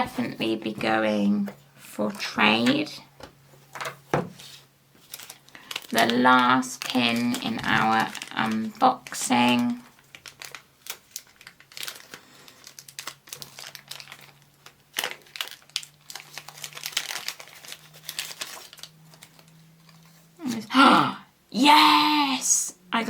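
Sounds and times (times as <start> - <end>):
plastic bag crinkling and tearing: 5.0 - 20.6.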